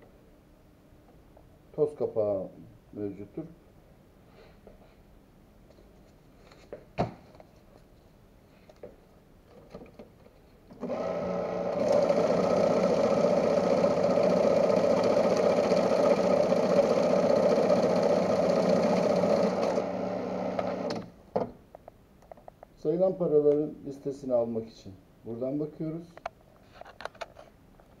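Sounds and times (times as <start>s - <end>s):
banknote counting machine running: 10.8s - 20.9s.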